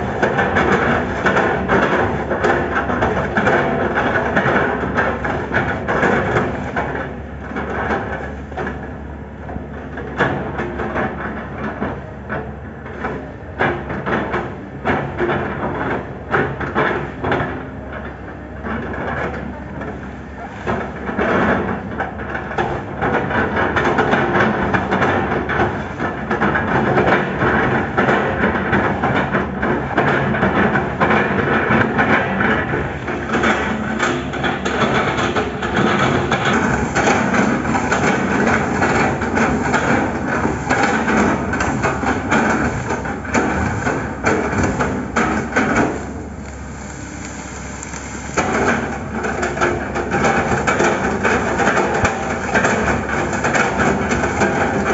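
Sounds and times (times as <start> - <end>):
excavator engine running: 0.0 - 54.9
wood knocking and cracking: 30.0 - 54.9.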